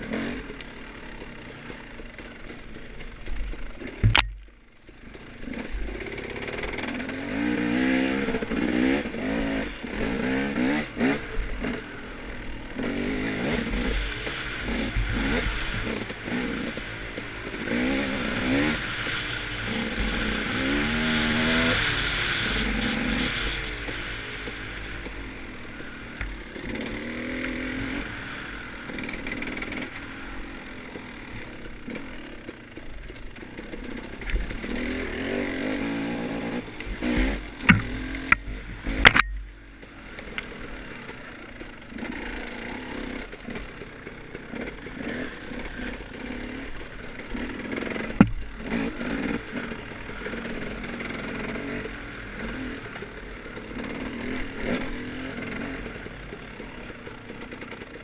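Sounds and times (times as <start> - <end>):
dirt bike engine revving: 0.0 - 58.0
sharp knocks and clatter: 1.7 - 6.8, 37.0 - 39.6, 45.9 - 49.8.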